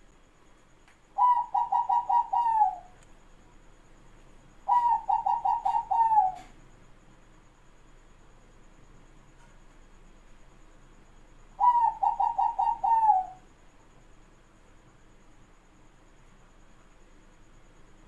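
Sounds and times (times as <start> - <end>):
dove cooing: 1.2 - 3.0, 4.6 - 6.6, 11.6 - 13.4.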